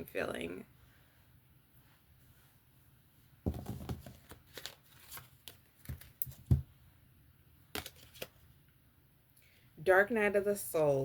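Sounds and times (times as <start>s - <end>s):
cards being shuffled: 3.5s - 6.7s, 7.7s - 8.5s.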